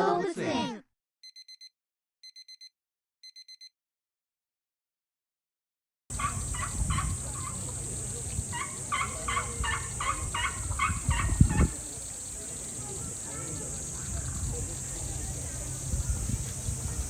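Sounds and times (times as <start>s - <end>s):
short electronic beeps: 1.2s - 3.7s
steady high hiss: 6.1s - 17.0s.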